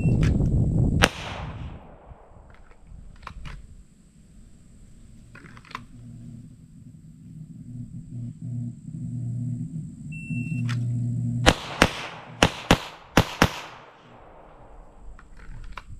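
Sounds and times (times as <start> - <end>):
loud gunshot: 1.0 - 2.5, 11.4 - 15.1
faint sharp clicks: 2.4 - 3.7, 10.5 - 10.9.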